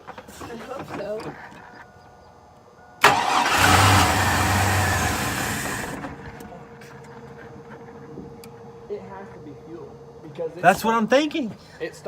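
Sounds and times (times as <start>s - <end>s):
car engine cranking and running: 3.0s - 6.6s.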